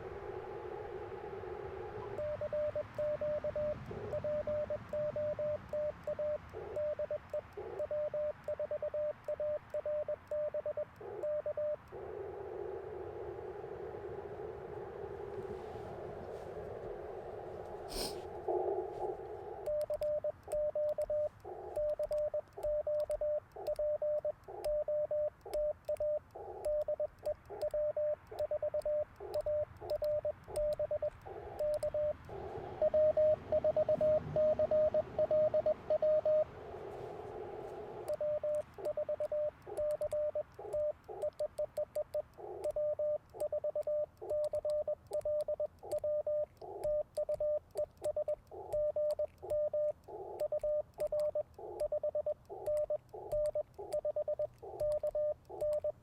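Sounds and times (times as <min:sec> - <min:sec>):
morse code tone: 0:02.0 - 0:11.8, 0:19.5 - 0:56.0
radio band hiss: 0:11.0 - 0:19.7.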